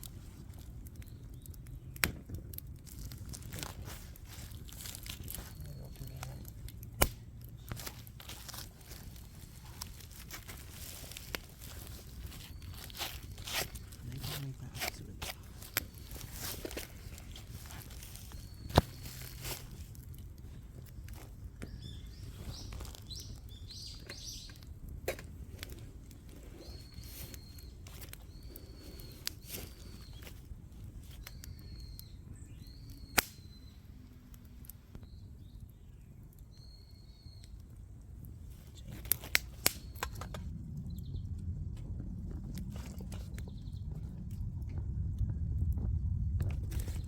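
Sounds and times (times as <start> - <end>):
low outdoor rumble: 0.0 - 47.0
bird chirping: 21.2 - 24.6, 26.5 - 30.4, 31.1 - 34.0, 35.0 - 37.6.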